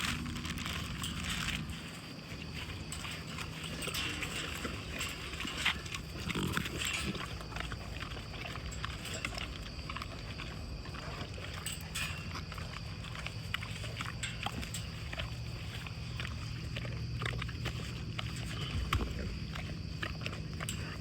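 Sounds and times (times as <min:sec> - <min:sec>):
puppy chewing and smacking: 0:00.0 - 0:21.0.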